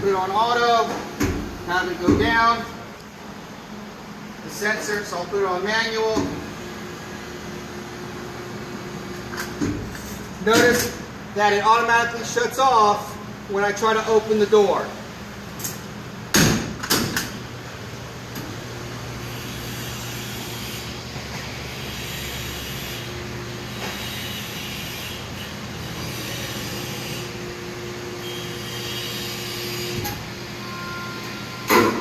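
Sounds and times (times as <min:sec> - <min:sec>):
loud metal door bangs: 0:16.3 - 0:17.2.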